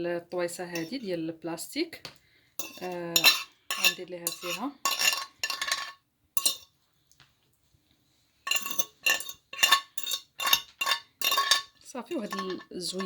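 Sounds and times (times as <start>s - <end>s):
spoon scraping a dish: 0.7s - 1.1s, 2.6s - 6.7s, 8.4s - 13.0s.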